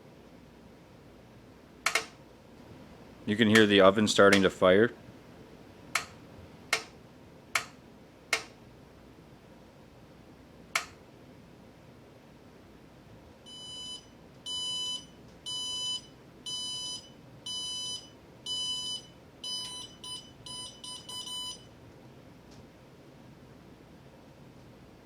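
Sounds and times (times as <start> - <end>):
electronic controller beeps: 13.5 - 21.6.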